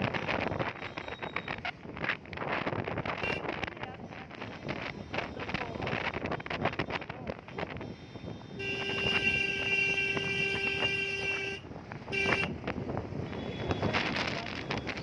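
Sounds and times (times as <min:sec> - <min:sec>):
road noise: 0:00.0 - 0:15.0
vehicle horn blasts: 0:03.2 - 0:03.5, 0:08.3 - 0:12.6, 0:13.3 - 0:14.0.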